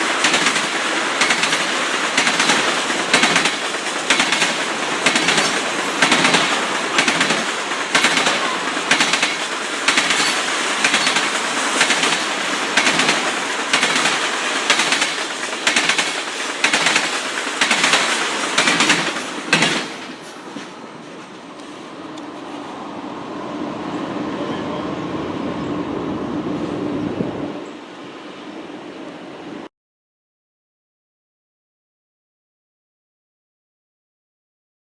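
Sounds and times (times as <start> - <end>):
rhythmic mechanical clatter: 0.2 - 20.1.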